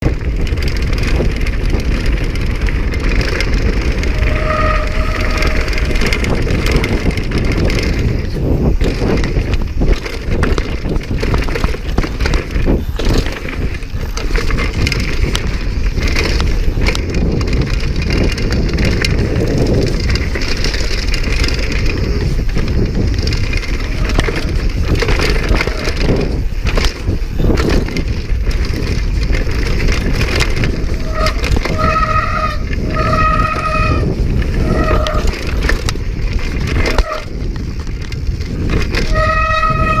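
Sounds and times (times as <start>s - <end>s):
bike rattling and knocking: 0.0s - 40.0s
tyres rumbling on dirt: 0.0s - 40.0s
short high squeals: 4.0s - 6.0s.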